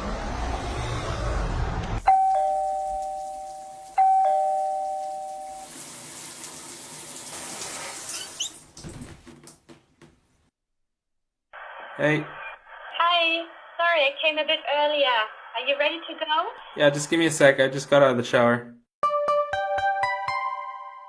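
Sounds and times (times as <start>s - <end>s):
two-note doorbell chime: 2.0s - 5.9s.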